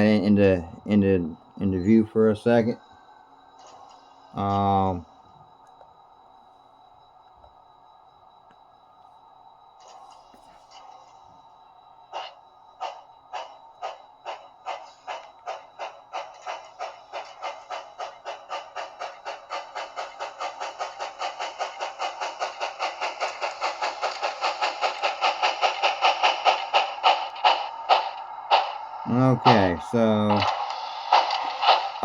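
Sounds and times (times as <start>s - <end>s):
model train steam chuffs from speaker: 12.1s - 32.0s.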